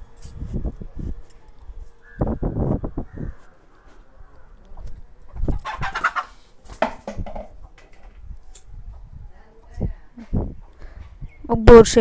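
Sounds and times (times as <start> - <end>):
hen clucking: 5.3 - 6.4
dull knocks and rubbing: 6.7 - 7.8.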